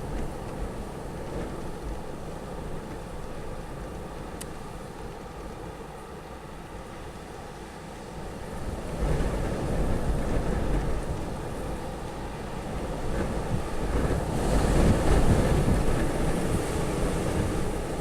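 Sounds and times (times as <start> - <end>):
wind buffeting microphone: 8.2 - 18.0.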